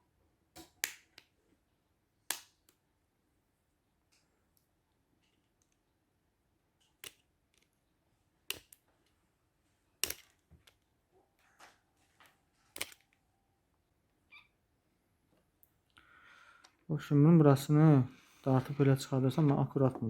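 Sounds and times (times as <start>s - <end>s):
plastic housing clicking and snapping: 10.0s - 10.8s, 12.7s - 13.2s.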